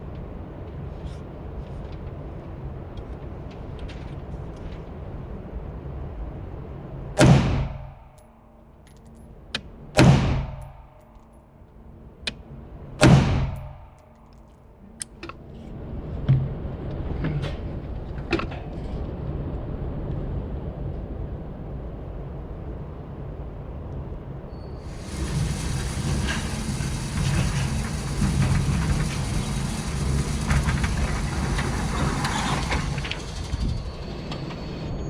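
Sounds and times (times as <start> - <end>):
rifle shots: 7.2 - 7.9.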